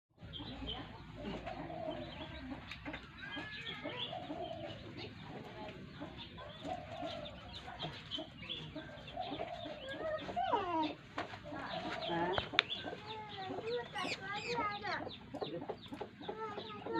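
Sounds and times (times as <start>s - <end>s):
birds chirping: 0.2s - 16.9s.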